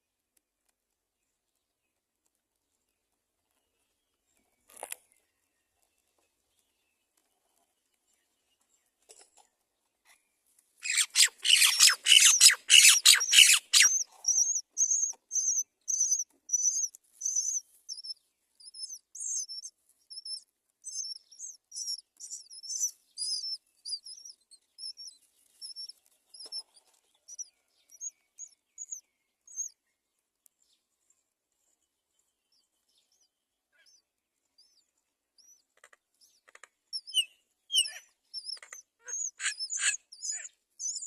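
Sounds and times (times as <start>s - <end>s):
nestling birds harsh begging calls: 10.8s - 18.1s, 18.7s - 26.6s, 37.0s - 41.0s
thin high chirps: 10.8s - 26.6s, 37.0s - 41.0s.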